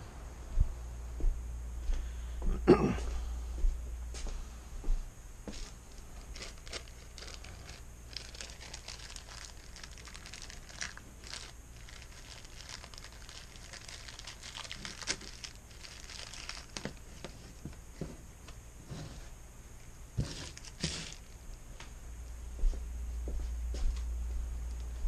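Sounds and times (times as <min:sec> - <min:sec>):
faint low hum: 0:00.0 - 0:25.0
objects rustling and clicking: 0:05.5 - 0:19.3, 0:20.2 - 0:21.4.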